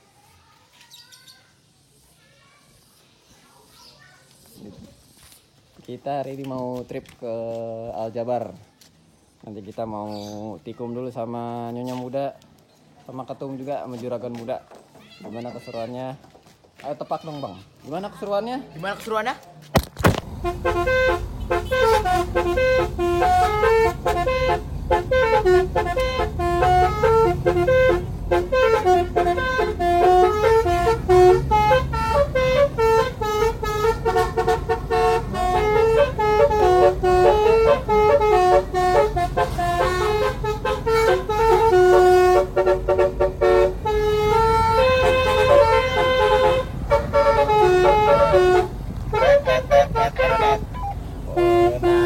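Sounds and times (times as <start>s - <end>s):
multi-tone musical car horn: 20.3s - 52.0s.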